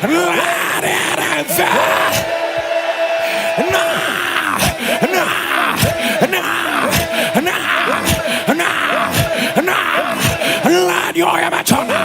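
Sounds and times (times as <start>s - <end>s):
man praying rapidly: 0.0s - 2.3s, 3.2s - 12.0s.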